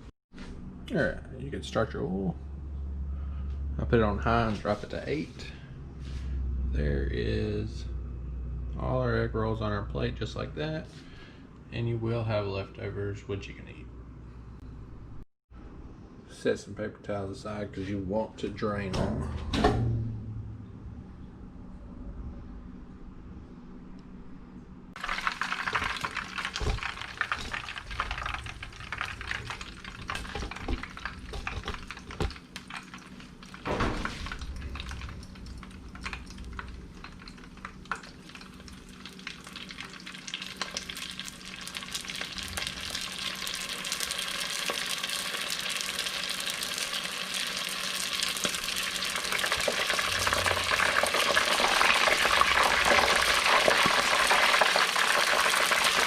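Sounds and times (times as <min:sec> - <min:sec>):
food deep-frying in oil: 0:25.0 - 0:56.0.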